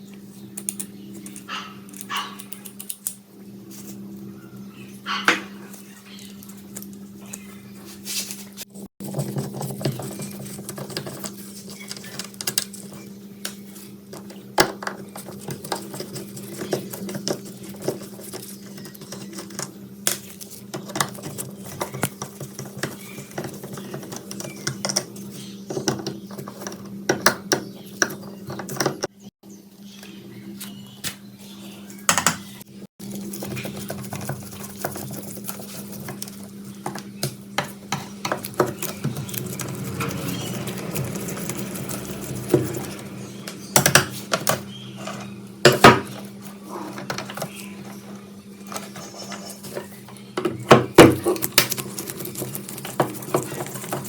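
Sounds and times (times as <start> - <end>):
low hum: 38.4 - 44.0.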